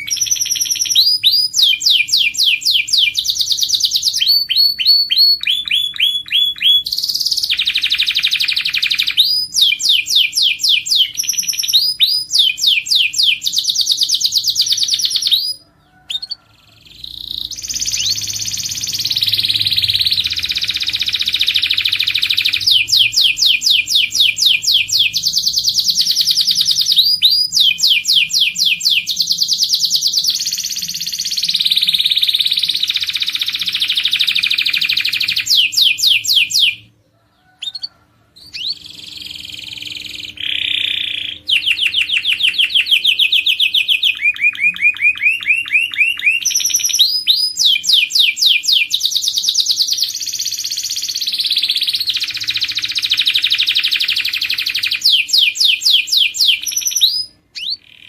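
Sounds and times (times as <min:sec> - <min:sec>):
canary singing trills: 0:00.0 - 0:58.0.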